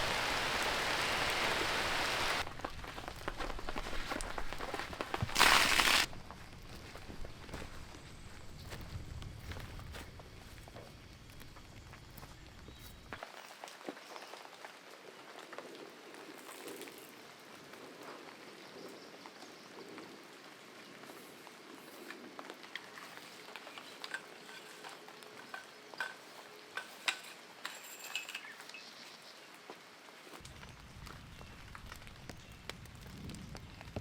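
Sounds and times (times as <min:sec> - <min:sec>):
rain pattering: 0:00.0 - 0:06.1, 0:30.0 - 0:34.0.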